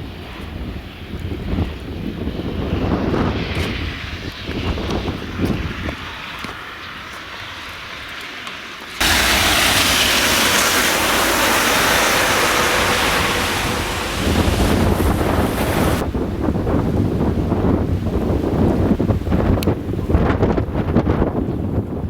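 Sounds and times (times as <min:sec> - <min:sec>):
blizzard wind buffeting microphone: 0:00.0 - 0:08.2, 0:09.0 - 0:22.0
loud rushing noise: 0:09.0 - 0:16.3.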